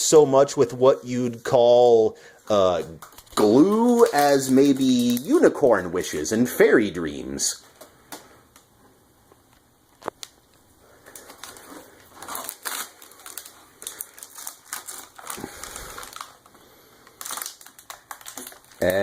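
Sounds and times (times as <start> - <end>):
plastic pack crinkling: 2.4 - 6.4, 9.9 - 19.0.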